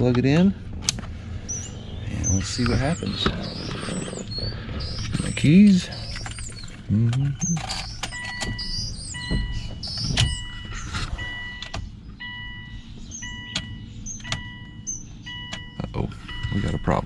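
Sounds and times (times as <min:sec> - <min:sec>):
car warning chime beeping: 0:01.3 - 0:17.0
keys clicking: 0:05.1 - 0:10.4.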